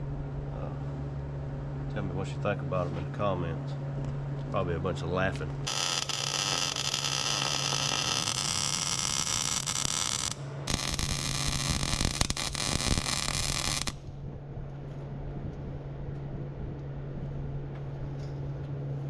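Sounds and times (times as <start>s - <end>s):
welding arc hissing and crackling: 5.7s - 14.0s.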